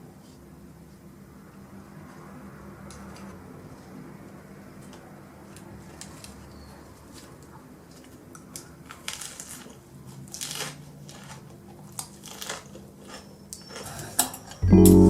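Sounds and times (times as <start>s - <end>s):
packaging rustling and crinkling: 7.1s - 12.8s
faint low hum: 14.6s - 15.0s.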